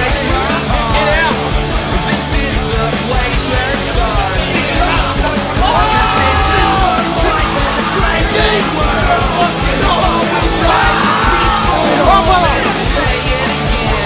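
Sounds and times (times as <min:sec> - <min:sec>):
loud rock music: 0:00.0 - 0:14.0
person shouting vocals: 0:04.6 - 0:12.9.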